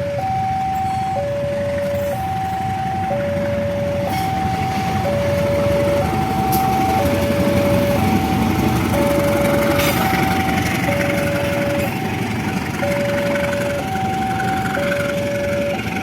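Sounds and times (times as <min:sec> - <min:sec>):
two-tone level-crossing alarm: 0:00.0 - 0:16.0.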